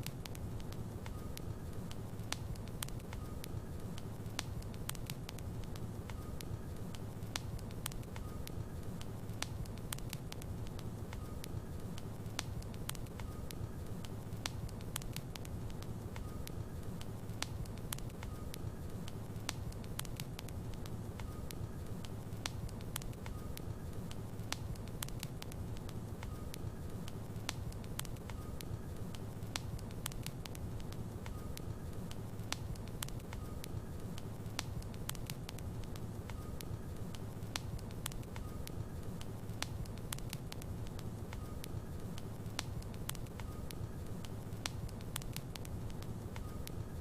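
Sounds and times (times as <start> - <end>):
fire crackles and pops: 0.0 - 47.0
low rumble of fire: 0.0 - 47.0.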